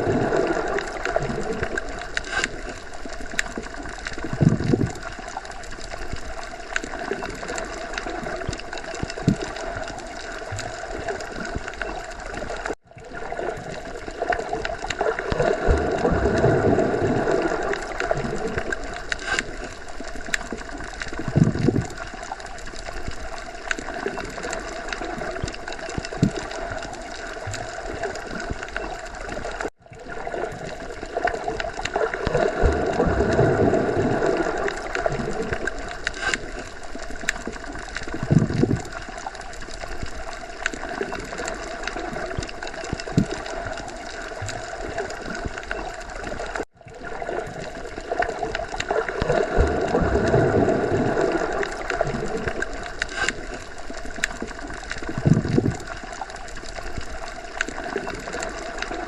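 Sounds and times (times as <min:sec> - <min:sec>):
muffled underwater wash: 0:00.0 - 0:59.0
small underwater clicks: 0:00.0 - 0:59.0
underwater gurgles: 0:00.0 - 0:59.0.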